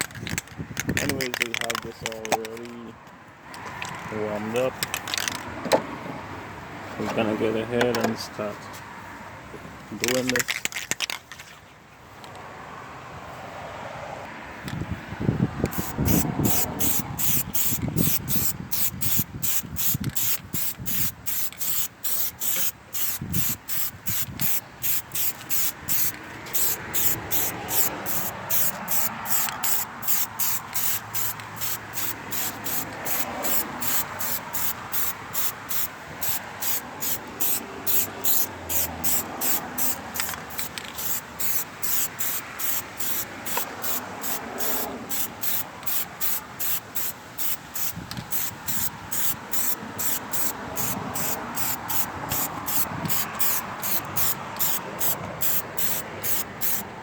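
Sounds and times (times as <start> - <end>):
aerosol can spraying: 15.7 - 56.8.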